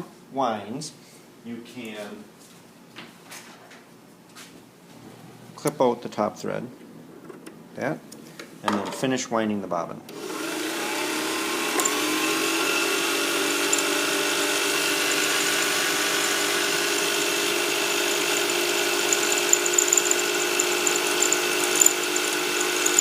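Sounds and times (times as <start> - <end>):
sewing machine motor whirring: 10.2 - 23.0.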